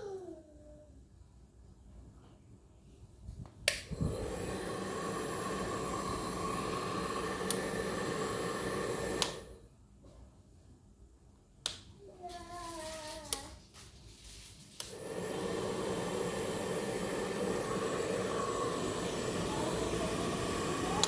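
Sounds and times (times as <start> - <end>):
hair dryer switch click: 3.6 - 4.4, 7.2 - 8.0, 8.7 - 9.5, 11.6 - 11.9
hair dryer running: 3.7 - 9.6, 14.8 - 21.0.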